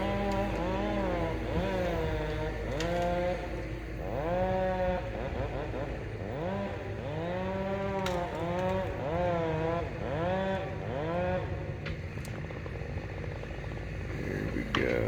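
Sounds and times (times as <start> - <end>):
chainsaw cutting: 0.0 - 11.6.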